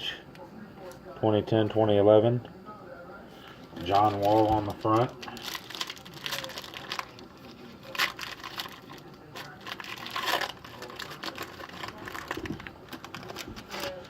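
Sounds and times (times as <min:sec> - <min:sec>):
foil wrapper crinkling and tearing: 0:03.8 - 0:14.0.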